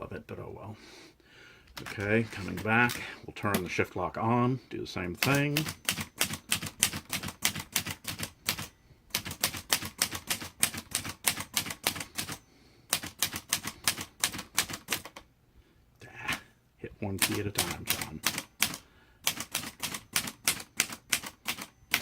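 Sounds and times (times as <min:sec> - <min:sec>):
manual typewriter typing: 0:01.7 - 0:03.8, 0:05.1 - 0:15.2, 0:17.1 - 0:22.0.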